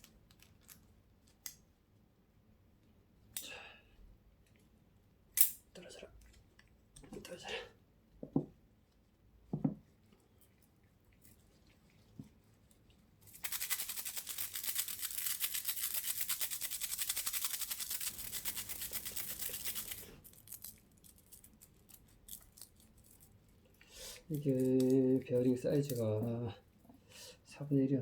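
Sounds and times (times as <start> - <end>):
steel bearing balls rattling: 13.3 - 21.7.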